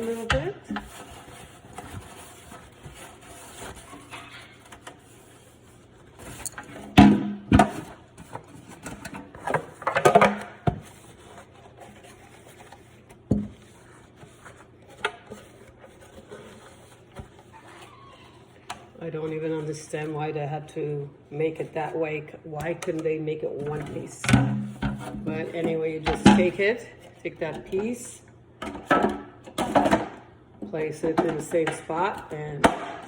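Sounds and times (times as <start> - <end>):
soft rubbing of plastic: 0.0 - 6.8, 10.7 - 20.2.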